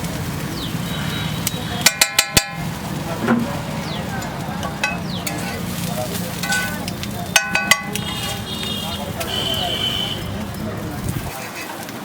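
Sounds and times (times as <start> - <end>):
frying sizzle: 0.0 - 12.0
metal spatula clanking on griddle: 1.4 - 3.6, 4.2 - 8.5.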